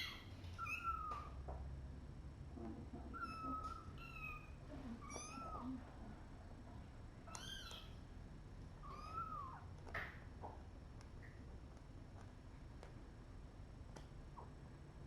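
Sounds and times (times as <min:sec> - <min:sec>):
kittens mewing: 0:08.8 - 0:09.7.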